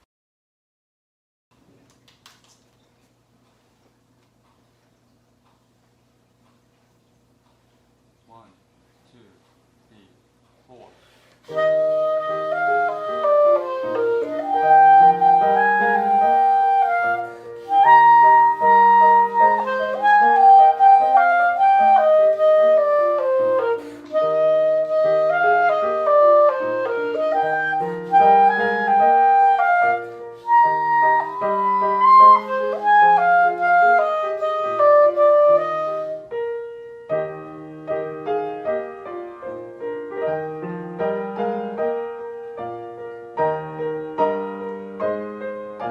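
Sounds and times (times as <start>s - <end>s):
clarinet melody: 11.4s - 45.9s
piano accompaniment: 11.5s - 45.9s.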